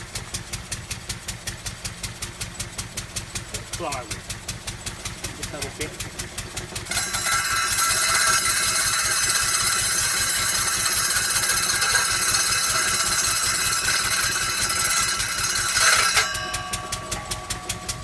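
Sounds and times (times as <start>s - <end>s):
single-cylinder engine running: 0.0s - 18.0s
circular saw cutting plywood: 6.6s - 18.0s.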